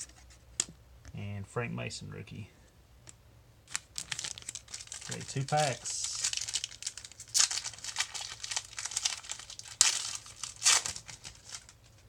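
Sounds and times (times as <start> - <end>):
foil wrapper tearing and crinkling: 3.7 - 12.0.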